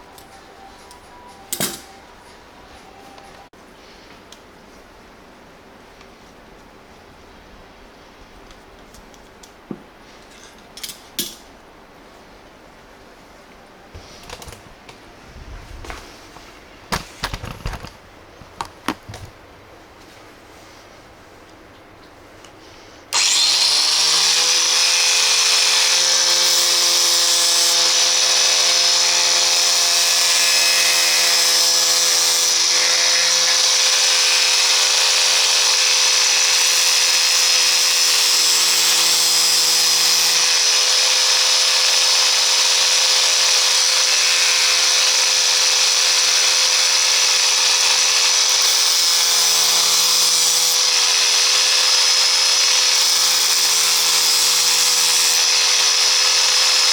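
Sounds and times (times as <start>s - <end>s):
electric grinder running: 23.2s - 56.9s.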